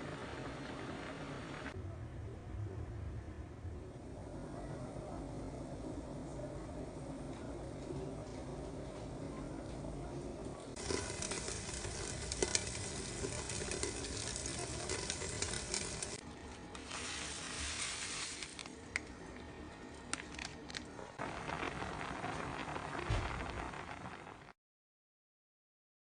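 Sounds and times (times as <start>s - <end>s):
food sizzling in a pan: 0.0s - 1.8s, 10.8s - 16.2s, 16.8s - 18.6s, 21.2s - 24.5s.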